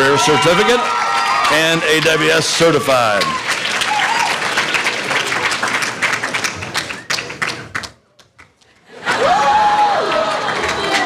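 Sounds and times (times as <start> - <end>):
audience applauding: 0.0 - 11.0
person whooping: 9.2 - 10.2.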